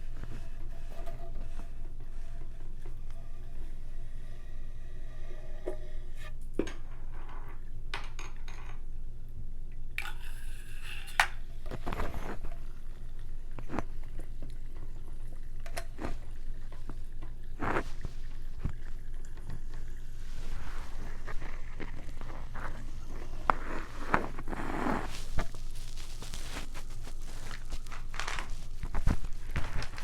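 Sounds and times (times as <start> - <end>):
slurping and chewing: 13.5 - 30.0.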